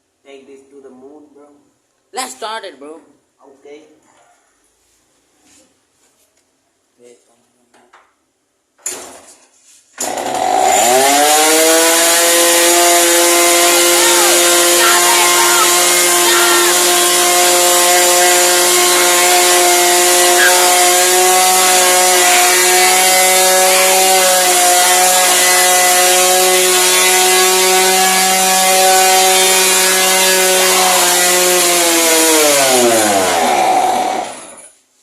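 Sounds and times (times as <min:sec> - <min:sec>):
motorcycle engine revving: 0:10.1 - 0:34.7.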